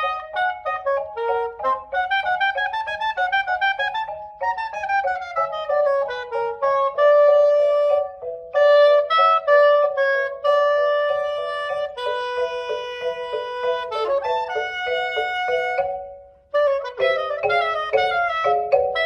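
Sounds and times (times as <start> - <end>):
solo saxophone melody: 0.0 - 19.0.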